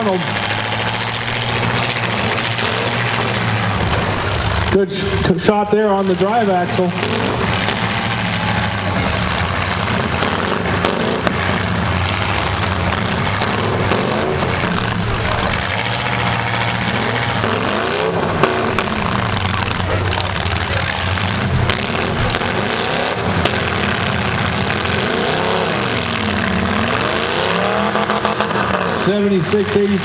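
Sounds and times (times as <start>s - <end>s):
car engines revving hard: 0.0s - 30.0s.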